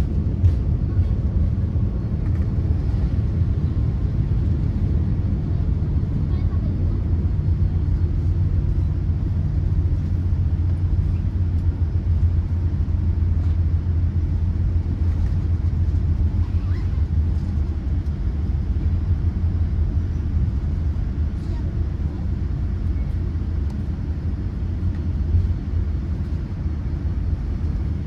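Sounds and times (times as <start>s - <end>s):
airliner cabin rumble: 0.0s - 28.0s.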